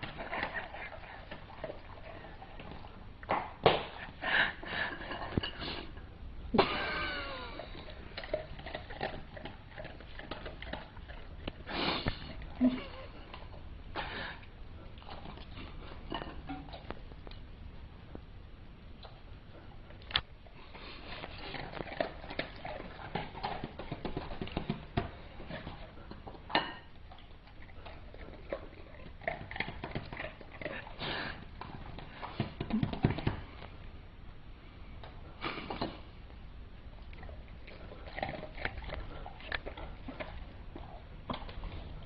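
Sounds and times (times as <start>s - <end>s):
person sniffing: 11.7s - 12.3s.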